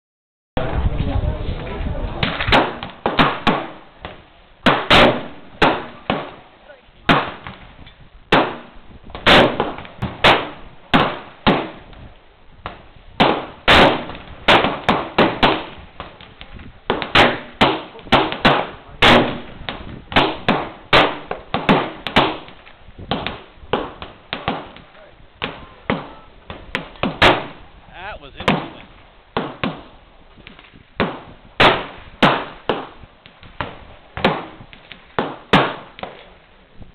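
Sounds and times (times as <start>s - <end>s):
gunshots with echo: 4.6s - 6.4s, 13.2s - 15.8s, 16.9s - 24.8s.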